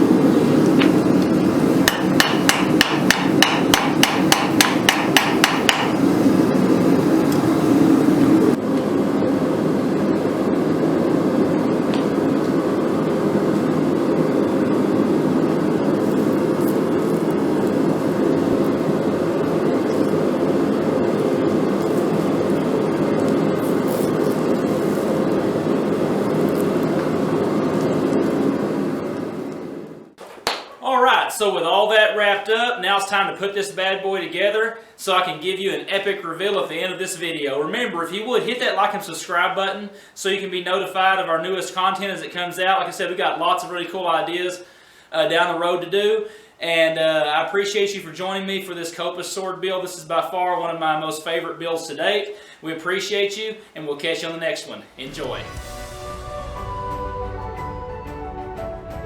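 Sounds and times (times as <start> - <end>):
rapid hammer strikes on metal: 1.8 - 6.0.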